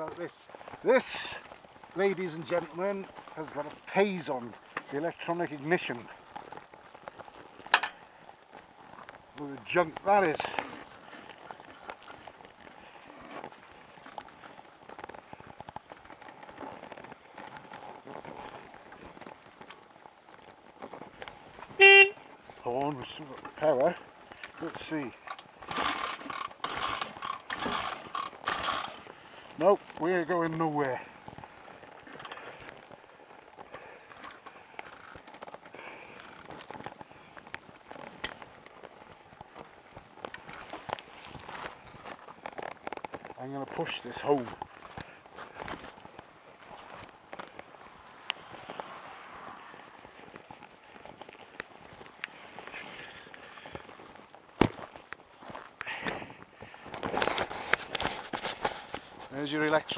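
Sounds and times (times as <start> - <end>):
light clicks and scuffs: 29.0 - 59.9.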